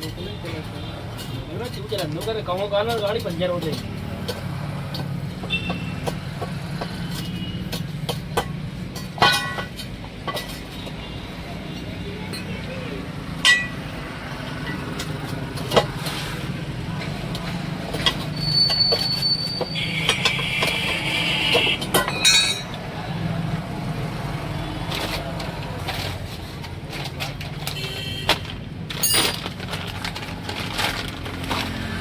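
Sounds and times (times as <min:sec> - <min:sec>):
knocks and clanks: 0:00.0 - 0:11.8, 0:13.2 - 0:22.9, 0:24.4 - 0:32.0.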